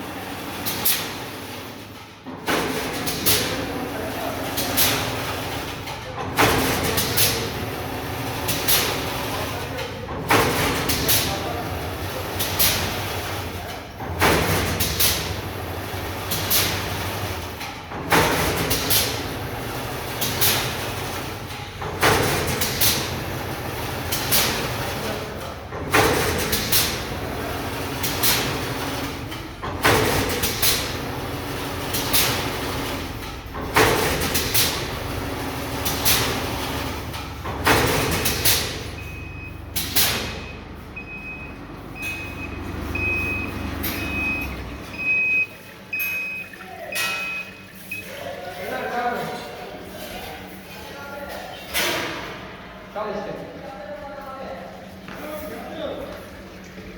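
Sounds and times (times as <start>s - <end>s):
mechanical hum: 0.0s - 56.9s
machine clatter: 0.1s - 40.5s.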